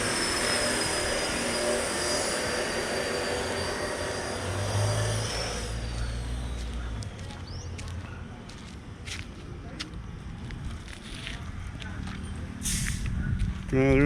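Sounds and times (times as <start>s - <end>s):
power tool whine: 0.0s - 6.8s.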